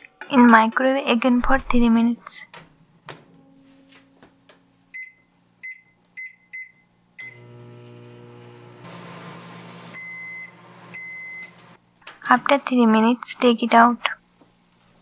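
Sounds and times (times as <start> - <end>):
microwave running hum: 2.6 - 14.4
long microwave beep: 4.9 - 7.7, 9.8 - 11.7
microwave keypad beeps: 10.0 - 11.6.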